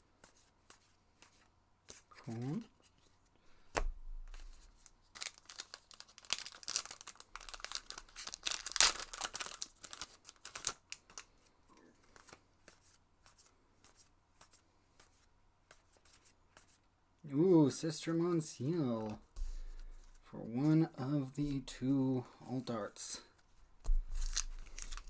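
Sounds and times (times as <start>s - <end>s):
foil wrapper tearing and crinkling: 5.2s - 11.2s, 24.1s - 25.0s.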